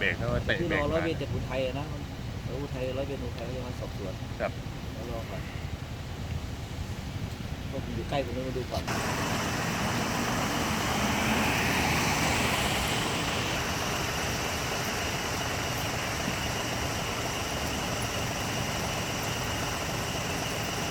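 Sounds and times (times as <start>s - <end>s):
road traffic noise: 0.0s - 20.9s
vehicle passing: 8.9s - 15.5s.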